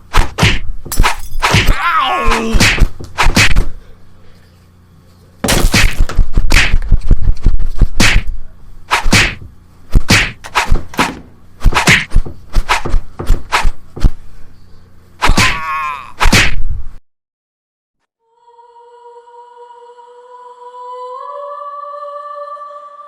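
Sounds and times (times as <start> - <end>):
punch impacts: 0.1 - 3.7, 5.4 - 6.8, 8.0 - 8.3, 8.9 - 14.2, 15.2 - 16.6.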